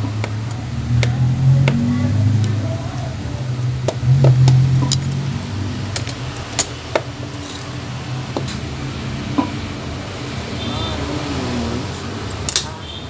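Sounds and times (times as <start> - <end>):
steady low hum: 0.0 - 10.4.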